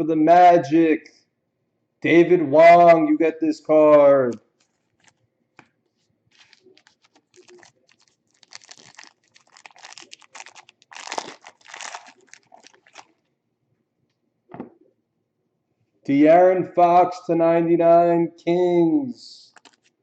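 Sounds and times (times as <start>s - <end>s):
plastic wrapping crinkling and tearing: 4.5s - 5.2s, 6.3s - 13.2s, 19.5s - 20.0s.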